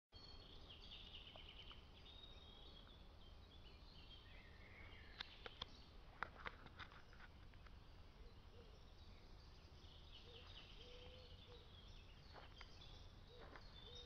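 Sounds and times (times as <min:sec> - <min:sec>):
small birds chirping: 0:00.2 - 0:14.0
sharp clicks: 0:05.1 - 0:07.0.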